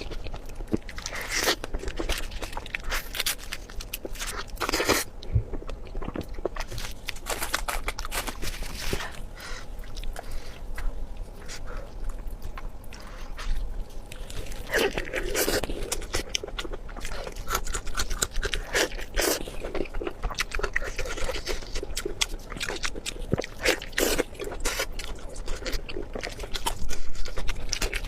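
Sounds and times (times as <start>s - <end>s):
person crunching and chewing: 0.0s - 28.0s.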